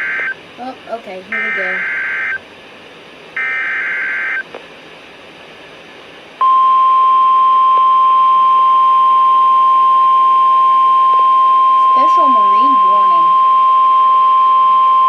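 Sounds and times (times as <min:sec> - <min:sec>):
radio hiss: 0:01.2 - 0:02.4
data bursts: 0:01.3 - 0:02.4, 0:10.4 - 0:13.6.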